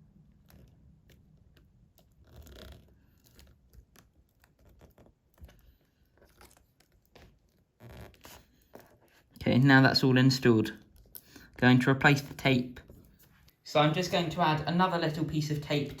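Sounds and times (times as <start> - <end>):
faint clicks and rustles of handling: 0.0 - 9.5, 10.7 - 11.8, 12.4 - 13.7.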